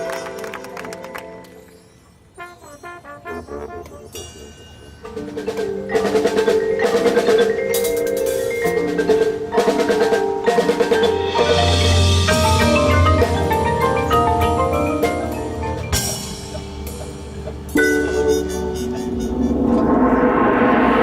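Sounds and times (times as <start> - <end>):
marching band playing: 0.0 - 1.6, 2.4 - 20.8
mallet percussion: 0.0 - 19.6
deep low rumble: 19.0 - 21.0.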